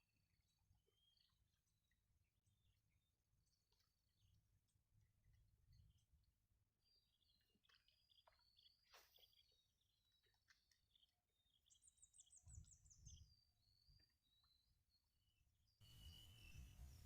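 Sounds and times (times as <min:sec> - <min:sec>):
bird chirps and whistles: 0:15.8 - 0:17.0.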